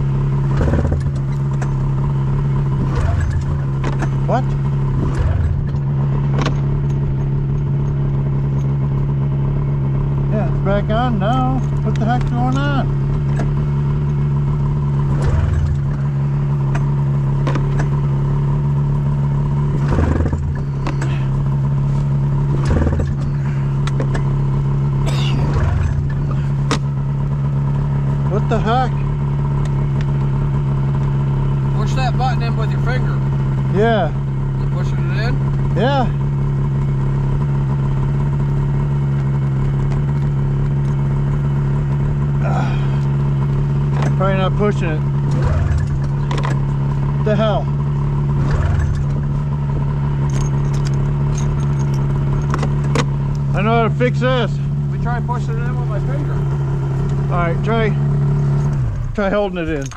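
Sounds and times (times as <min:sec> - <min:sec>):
engine idling: 0:00.0 - 0:59.9
clattering bursts: 0:00.5 - 0:08.0, 0:15.0 - 0:18.0, 0:19.6 - 0:24.4, 0:25.0 - 0:27.0, 0:43.8 - 0:47.3, 0:47.9 - 0:53.2.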